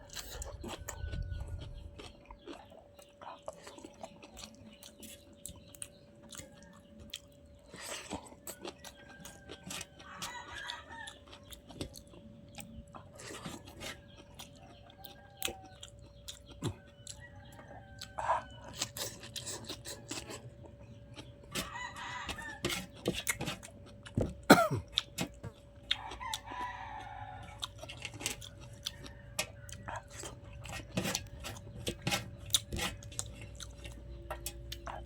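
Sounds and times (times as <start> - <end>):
chickens clucking: 0.0 - 24.3
chewing and crunching food: 0.0 - 35.0.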